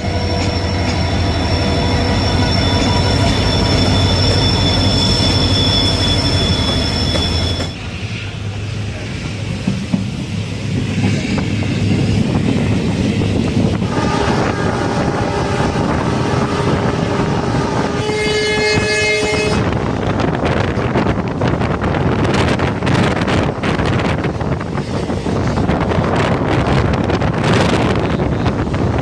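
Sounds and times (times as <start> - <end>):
train running rumble: 0.0 - 29.0
wind over microphone: 8.1 - 29.0
train horn: 13.8 - 19.8.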